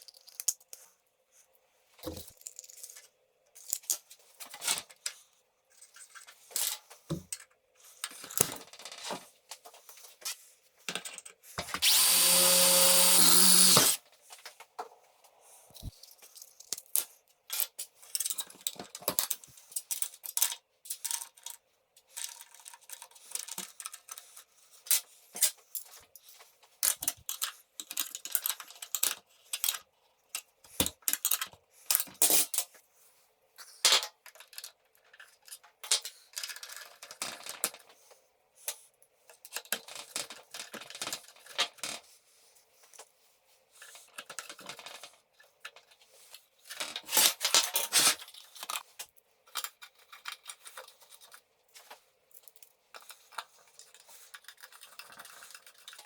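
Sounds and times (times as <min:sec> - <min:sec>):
parts clicking and knocking: 0:11.8 - 0:14.0
power drill running: 0:11.8 - 0:14.0.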